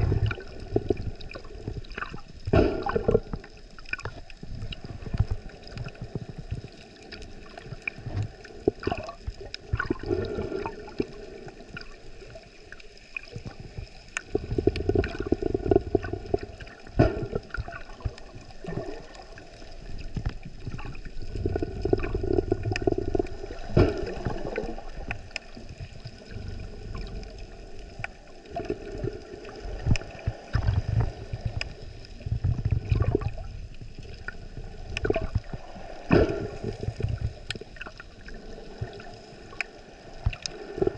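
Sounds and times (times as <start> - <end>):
water gurgling and sloshing: 0.0 - 40.9
sharp clicks and crackles: 11.7 - 28.8, 29.8 - 38.2.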